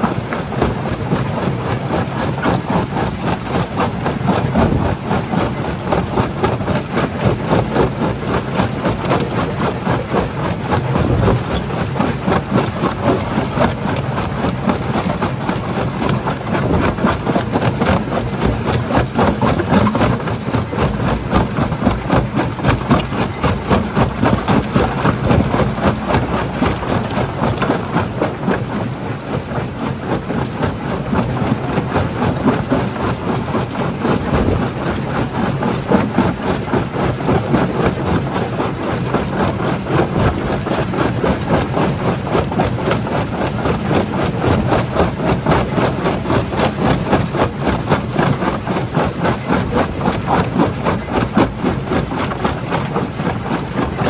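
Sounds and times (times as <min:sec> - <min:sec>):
heavy machinery rumble: 0:00.0 - 0:54.0
rapid clatter of crusher: 0:00.0 - 0:54.0.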